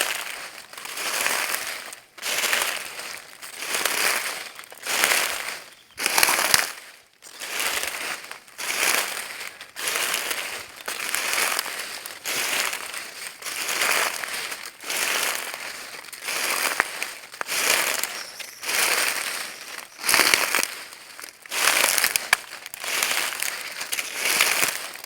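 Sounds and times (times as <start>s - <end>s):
footsteps in dry leaves: 0.0s - 25.0s.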